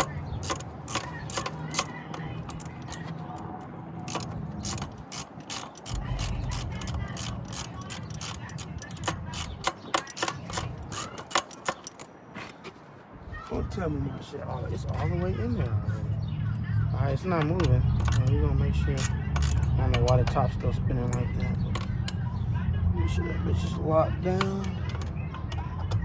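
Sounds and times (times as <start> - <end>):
socket wrench ratchet clicking: 0.0 - 3.2, 4.1 - 12.1, 17.6 - 20.4.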